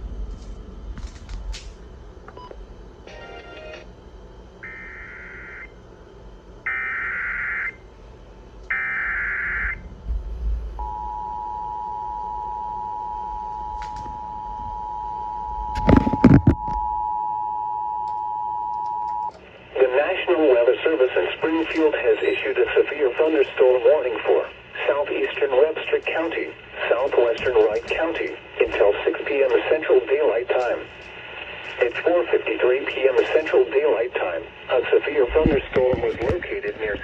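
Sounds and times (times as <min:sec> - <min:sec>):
loud crackles: 0:25.2 - 0:29.7.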